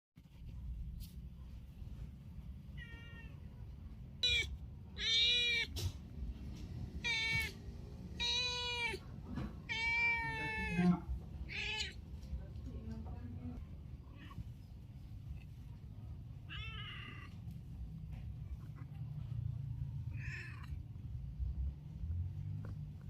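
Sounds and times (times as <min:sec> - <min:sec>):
cat meowing: 0:02.7 - 0:03.6, 0:04.2 - 0:05.9, 0:07.0 - 0:12.0, 0:16.4 - 0:17.4, 0:20.1 - 0:20.8.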